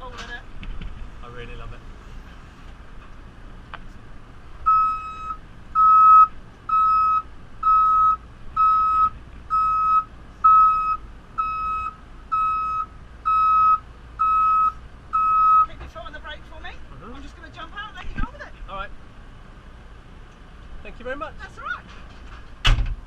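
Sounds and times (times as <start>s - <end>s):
engine low hum: 0.0s - 23.0s
reversing alarm beeping: 4.7s - 15.7s.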